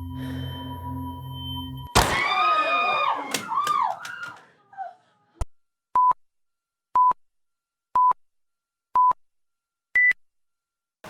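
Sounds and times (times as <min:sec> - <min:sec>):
click: 0:03.3 - 0:04.4.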